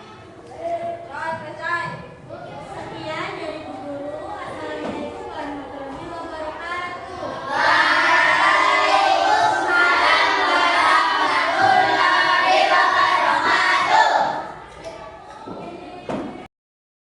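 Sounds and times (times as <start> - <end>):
children singing together: 5.9 - 16.1.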